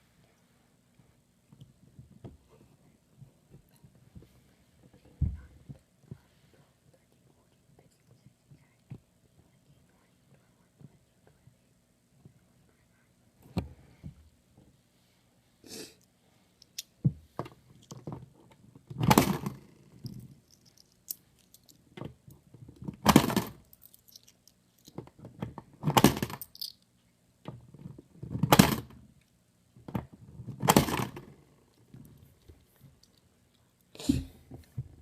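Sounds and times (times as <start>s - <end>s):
coins jingling: 23.8s - 24.4s, 26.4s - 26.8s.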